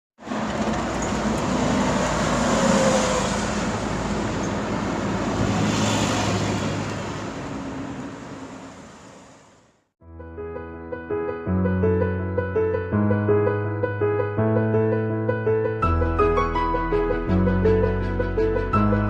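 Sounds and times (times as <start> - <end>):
rushing mechanical noise: 0.2 - 9.7.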